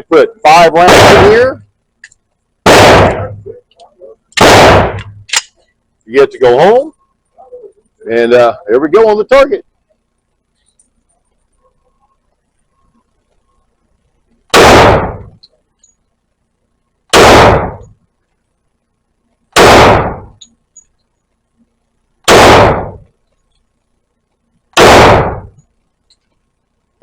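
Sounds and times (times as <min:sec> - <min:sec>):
pistol shots echoing indoors: 0:00.8 - 0:01.6, 0:02.7 - 0:03.5, 0:04.4 - 0:05.4, 0:14.5 - 0:15.4, 0:17.1 - 0:18.0, 0:19.6 - 0:20.4, 0:22.3 - 0:23.1, 0:24.8 - 0:25.6.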